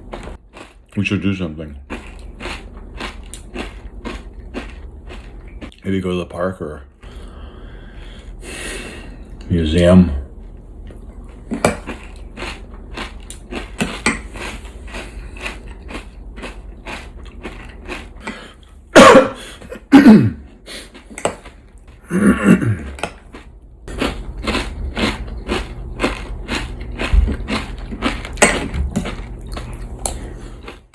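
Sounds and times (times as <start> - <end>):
man clearing his throat: 19.0 - 20.5, 22.0 - 23.0.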